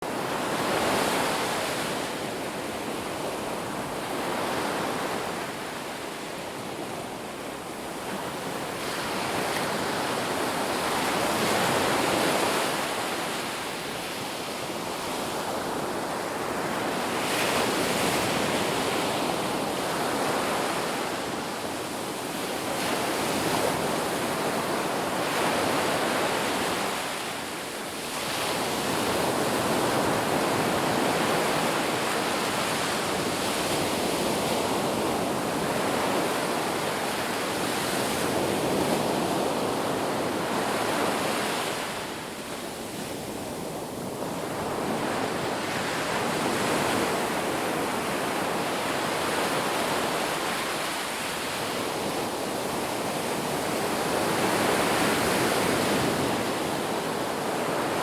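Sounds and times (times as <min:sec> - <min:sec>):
ocean waves breaking on beach: 0:00.0 - 0:58.0.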